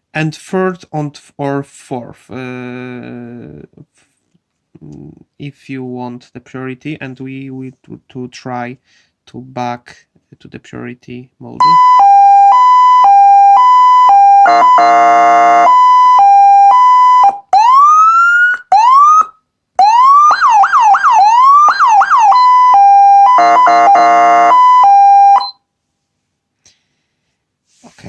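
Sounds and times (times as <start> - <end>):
siren sweeps and yelps: 11.6 - 25.5
electronic siren hi-lo two-tone: 11.6 - 25.6
air horn blasts: 14.5 - 15.8, 23.4 - 24.8.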